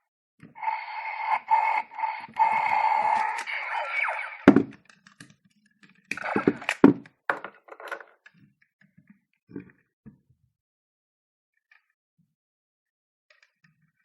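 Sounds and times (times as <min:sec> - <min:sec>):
plastic toy clicks and knocks: 0:04.5 - 0:08.4.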